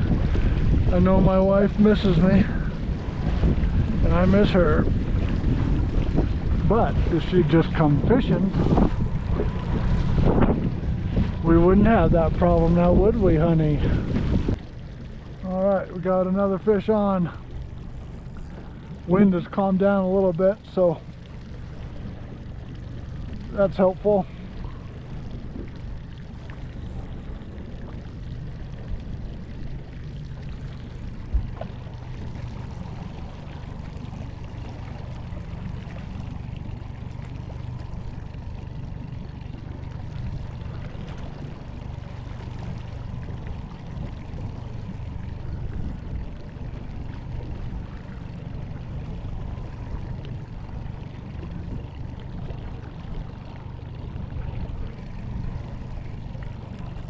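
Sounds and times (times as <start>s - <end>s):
wind on microphone: 0.0s - 14.6s
low steady hum: 0.0s - 57.0s
water against boat: 0.0s - 57.0s.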